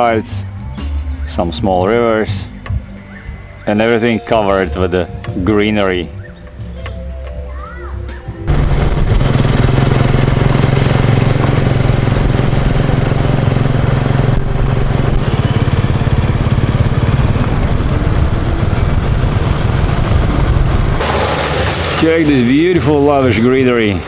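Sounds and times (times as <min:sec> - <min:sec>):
wind and road noise: 0:08.4 - 0:24.0
vehicle engine running: 0:08.5 - 0:24.0.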